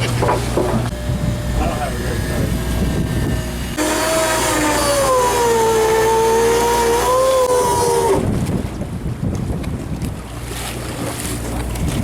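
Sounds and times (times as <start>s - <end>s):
low rumble of boat and wind: 0.0s - 12.0s
fishing reel motor whine: 0.9s - 8.2s.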